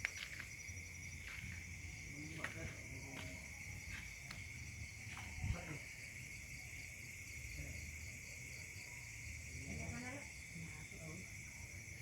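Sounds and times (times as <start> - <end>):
insects droning: 0.0 - 12.0.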